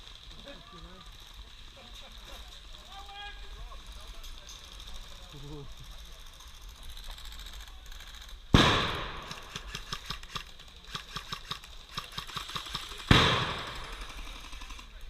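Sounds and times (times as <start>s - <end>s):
small sharp cracks: 7.0s - 15.0s
loud bangs ringing off: 8.5s - 10.2s, 12.9s - 14.4s.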